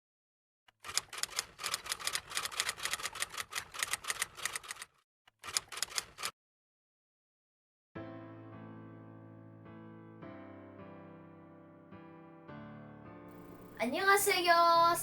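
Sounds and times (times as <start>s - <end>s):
typewriter keys clattering: 0.8s - 6.3s.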